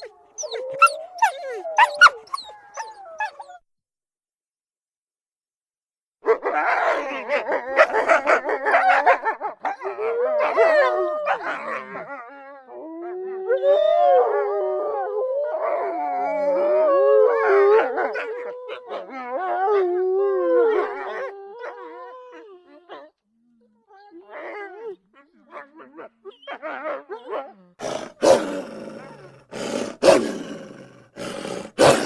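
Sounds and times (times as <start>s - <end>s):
wolves howling: 0.0s - 3.6s, 6.3s - 23.1s
wolves yipping and barking: 0.0s - 3.6s, 6.2s - 12.3s, 17.4s - 19.6s, 24.4s - 28.4s.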